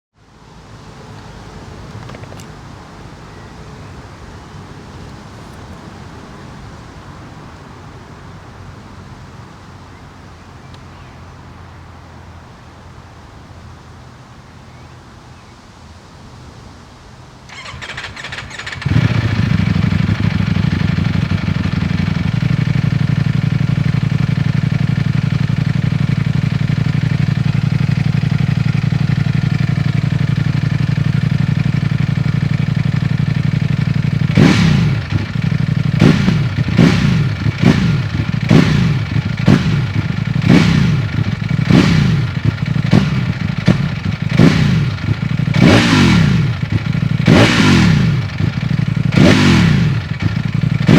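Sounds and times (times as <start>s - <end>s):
motorcycle engine idling: 0.9s - 7.1s, 17.5s - 50.9s
starter motor whirring: 17.5s - 20.6s
engine revving: 17.5s - 50.9s.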